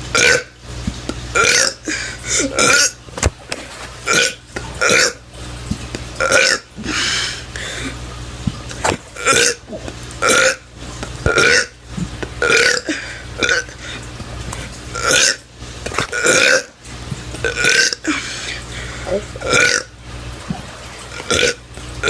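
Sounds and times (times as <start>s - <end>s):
person burping: 0.1s - 0.6s, 1.4s - 3.0s, 4.1s - 5.2s, 6.2s - 8.0s, 8.8s - 10.6s, 11.3s - 14.0s, 14.9s - 16.8s, 17.4s - 18.4s, 19.0s - 19.9s, 21.1s - 21.6s.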